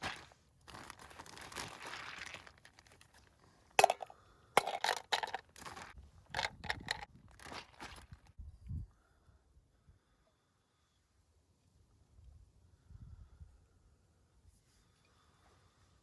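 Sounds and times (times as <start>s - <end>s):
crinkling and rustling: 0.0s - 8.3s.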